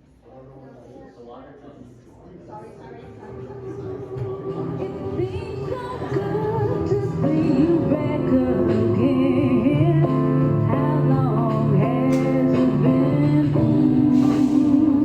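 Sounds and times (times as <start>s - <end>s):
person singing: 3.3s - 15.0s
guitar accompaniment: 3.5s - 15.0s.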